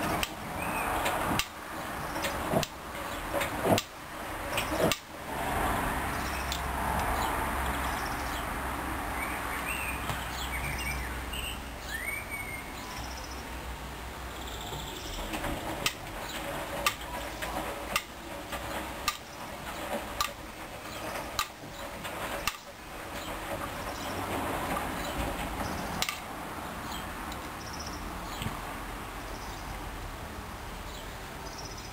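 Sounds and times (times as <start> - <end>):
water sloshing in washing machine: 15.1 - 27.2.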